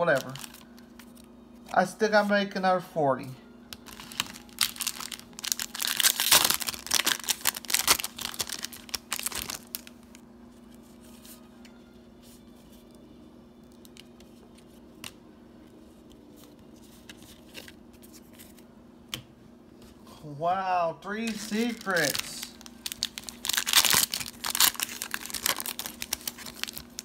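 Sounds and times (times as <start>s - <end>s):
foil card pack tearing and crinkling: 0.0s - 1.3s, 3.8s - 10.2s, 21.2s - 27.0s
steady low hum: 0.0s - 27.0s.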